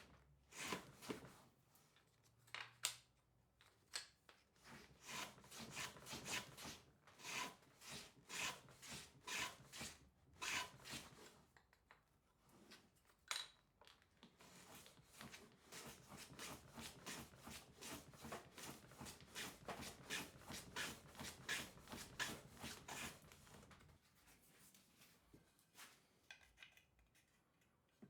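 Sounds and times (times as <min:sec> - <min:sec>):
hand tool scraping wood: 0:05.0 - 0:11.4, 0:15.3 - 0:23.5.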